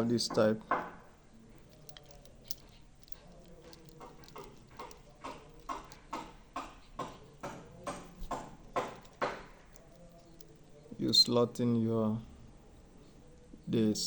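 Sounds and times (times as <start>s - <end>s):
connector parts clicking: 1.5s - 11.4s.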